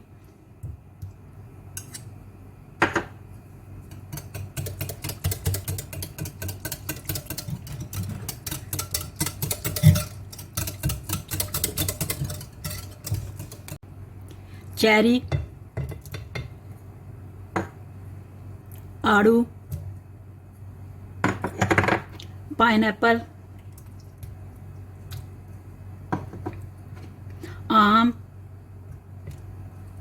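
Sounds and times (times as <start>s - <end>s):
spoon clinking and scraping in bowl: 3.9s - 13.8s.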